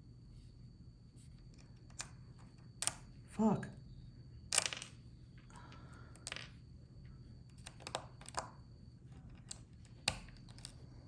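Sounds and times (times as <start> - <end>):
small parts and magnets clicking: 1.4 - 3.2, 4.5 - 6.6, 7.5 - 10.9.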